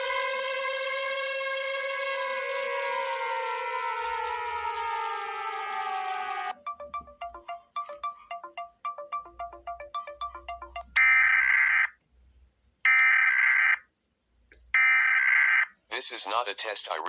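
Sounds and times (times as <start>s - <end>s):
short electronic beeps melody: 6.5s - 11.5s.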